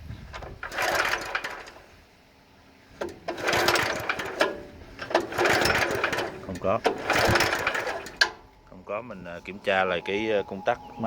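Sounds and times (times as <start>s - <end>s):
recoil starter pulled: 0.2s - 2.0s, 3.0s - 8.5s
small engine cranking: 0.4s - 1.9s, 3.0s - 8.4s.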